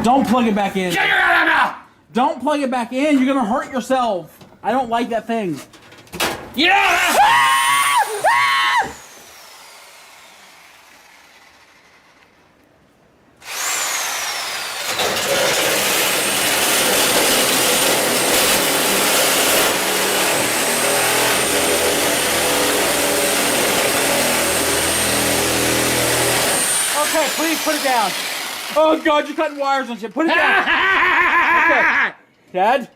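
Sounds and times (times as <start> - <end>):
person shouting: 0.9 - 1.9, 6.6 - 9.0, 30.2 - 32.2
electric motor humming: 13.4 - 15.0, 23.0 - 29.7.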